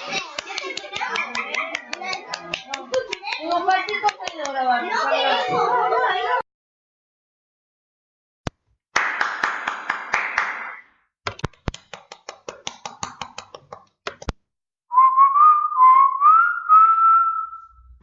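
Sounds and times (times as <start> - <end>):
person whistling a tune: 14.9 - 17.9.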